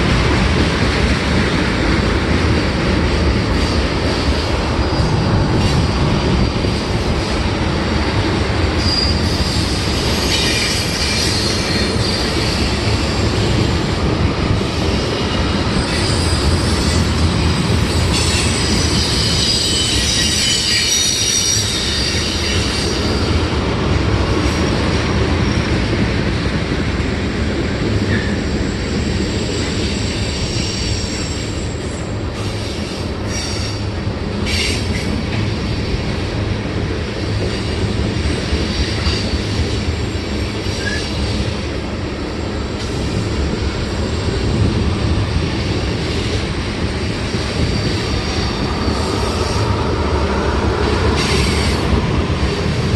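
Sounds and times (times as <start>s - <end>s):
train wheels rumbling: 0.0s - 52.9s
wheel flanges squealing on rail: 3.1s - 23.6s, 27.9s - 36.2s, 37.1s - 52.9s.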